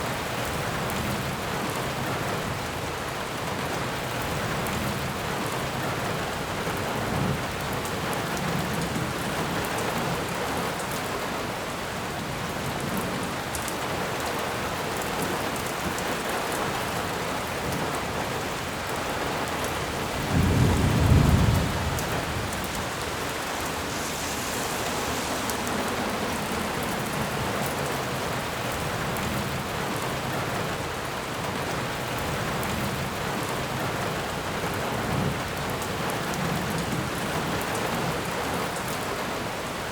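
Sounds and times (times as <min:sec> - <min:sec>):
steady rain in forest: 0:00.0 - 0:39.9
low rumble: 0:20.8 - 0:29.6.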